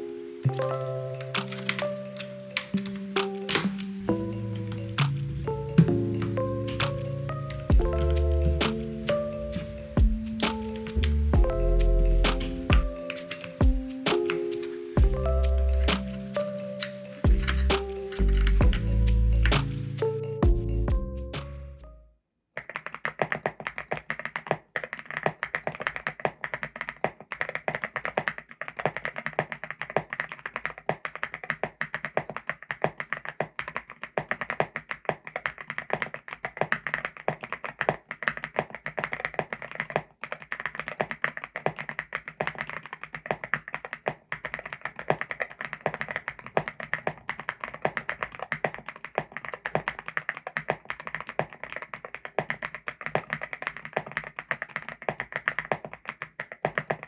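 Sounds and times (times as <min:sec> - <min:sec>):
mechanical keyboard typing: 0:00.0 - 0:20.6, 0:22.6 - 0:57.0.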